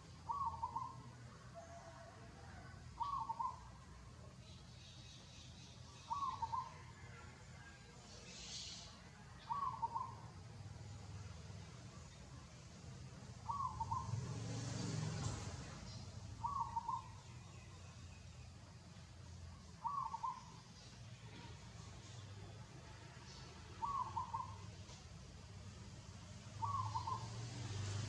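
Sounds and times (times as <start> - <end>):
bird call: 0.2 - 1.0, 3.0 - 3.7, 6.0 - 7.1, 8.3 - 10.2, 13.4 - 14.2, 15.9 - 17.4, 19.8 - 20.6, 23.8 - 25.0, 26.6 - 27.8.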